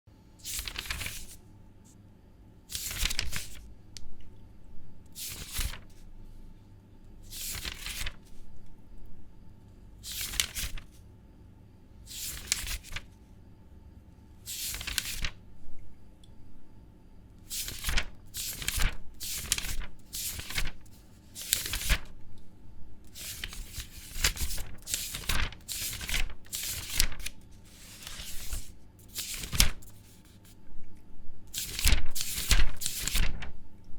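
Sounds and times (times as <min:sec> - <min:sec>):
paper pages turning: 0:00.4 - 0:01.4, 0:02.7 - 0:03.7, 0:05.2 - 0:06.0, 0:07.3 - 0:08.4, 0:10.0 - 0:11.0, 0:12.1 - 0:13.1, 0:14.5 - 0:15.4, 0:17.5 - 0:22.2, 0:23.1 - 0:30.6, 0:31.5 - 0:33.6.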